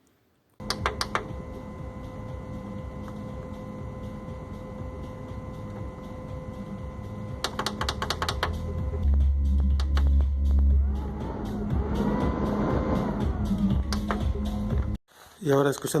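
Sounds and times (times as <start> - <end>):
cooling fan humming and whining: 0.6 - 15.0
loud deep rumble: 8.9 - 15.0.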